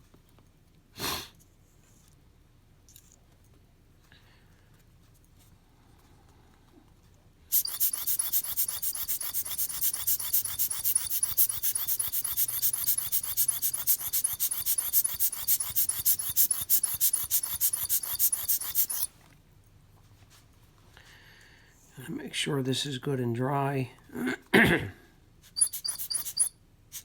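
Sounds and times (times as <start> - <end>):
hissing rasping cleaning strokes: 7.5 - 19.1.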